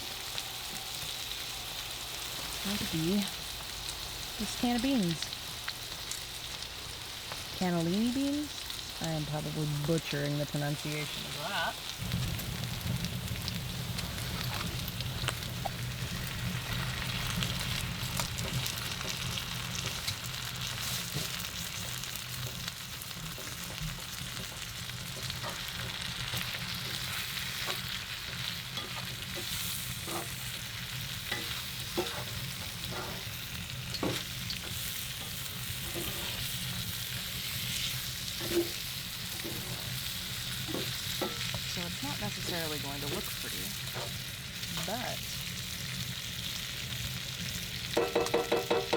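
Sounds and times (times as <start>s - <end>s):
food sizzling in a pan: 0.0s - 48.9s
spoon knocking against pan: 48.0s - 48.9s.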